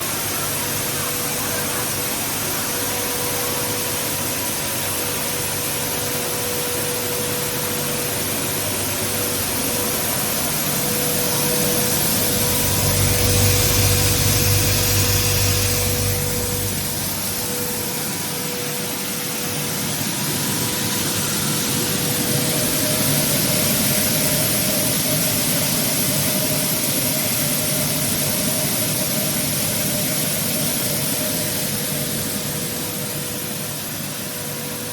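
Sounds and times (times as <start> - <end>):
electric grain mill whirring: 6.8 - 26.0.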